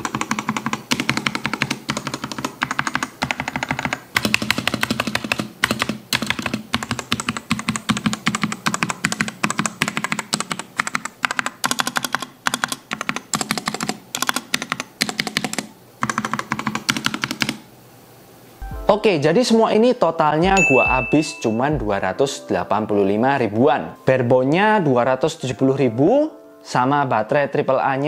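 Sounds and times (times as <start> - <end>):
fast typing on mechanical keyboard: 0.0 - 17.6.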